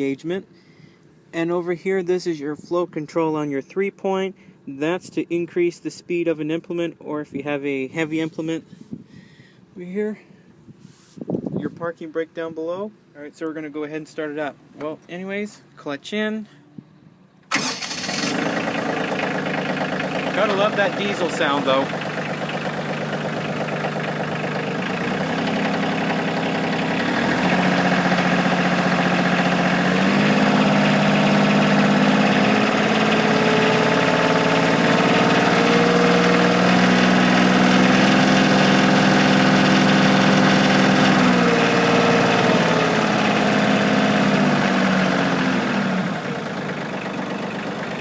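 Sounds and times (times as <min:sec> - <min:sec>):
tractor diesel engine running: 0:17.5 - 0:48.0.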